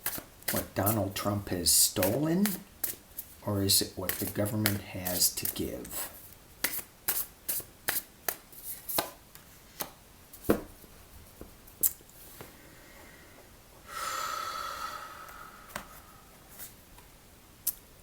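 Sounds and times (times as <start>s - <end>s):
cards rustling: 0.0s - 10.5s
cards snapping and tapping: 2.0s - 3.0s, 4.0s - 5.9s, 6.6s - 10.7s.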